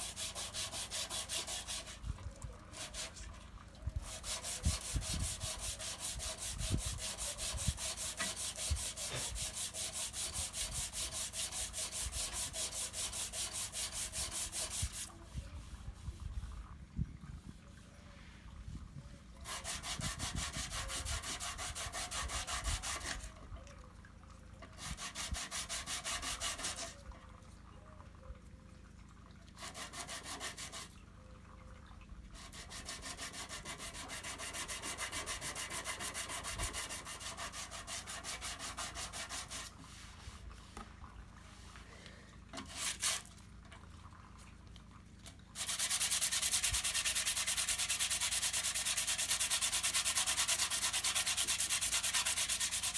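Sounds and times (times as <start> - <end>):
sandpaper sanding filler: 0.0 - 2.0, 4.0 - 15.1, 19.4 - 23.2, 24.9 - 26.9, 29.6 - 30.9, 32.4 - 40.4, 42.7 - 43.3, 45.6 - 52.9.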